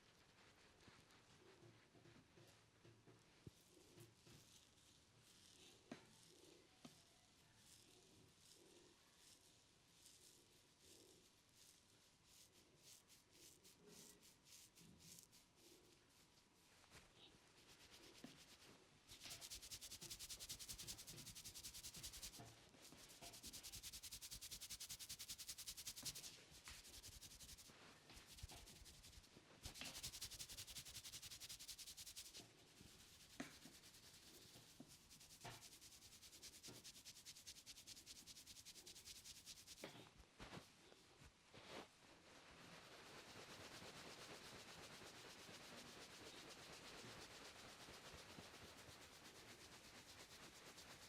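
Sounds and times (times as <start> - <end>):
hands rubbing through hair: 10.0 - 51.0.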